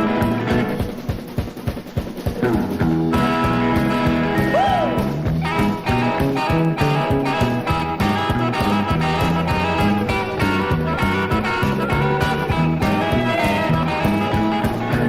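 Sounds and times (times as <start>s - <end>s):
rock and roll band playing: 0.0s - 15.0s
steady drum beat: 0.0s - 15.0s
repeating bass line: 2.4s - 15.0s.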